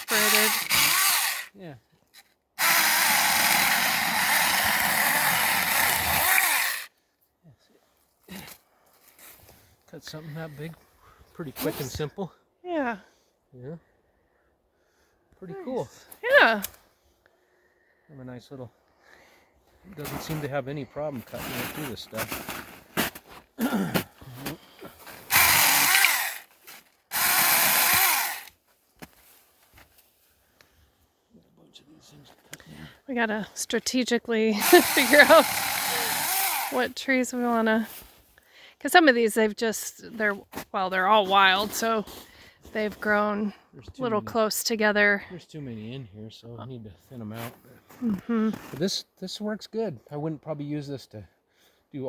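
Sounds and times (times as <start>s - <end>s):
chainsaw cutting wood: 0.0s - 1.5s, 2.6s - 6.9s, 25.1s - 28.6s, 34.6s - 37.0s.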